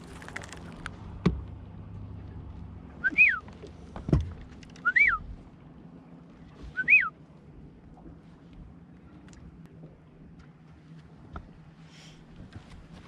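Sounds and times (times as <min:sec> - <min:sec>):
whistled notes: 0:03.0 - 0:03.4, 0:04.8 - 0:05.2, 0:06.8 - 0:07.1.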